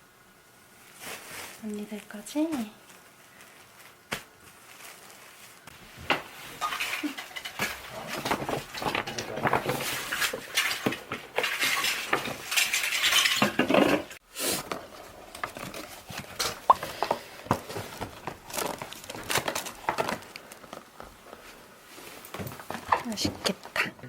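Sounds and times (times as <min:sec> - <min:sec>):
dishes and cutlery clinking: 0:06.1 - 0:14.2.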